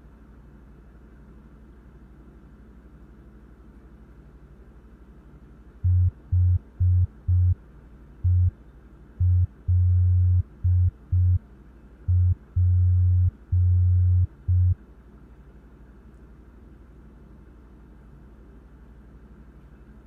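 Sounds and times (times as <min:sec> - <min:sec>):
electronic tone beeping morse code: 0:05.9 - 0:07.6, 0:08.3 - 0:08.5, 0:09.2 - 0:11.4, 0:12.1 - 0:14.8.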